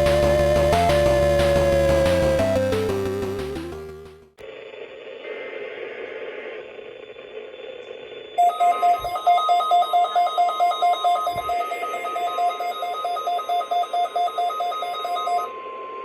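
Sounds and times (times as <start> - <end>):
radio static hiss: 4.4 - 8.4.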